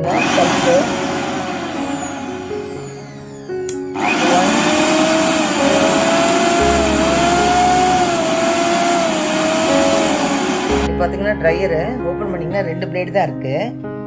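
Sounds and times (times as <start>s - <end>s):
mixer grinder motor whine: 0.0s - 10.9s.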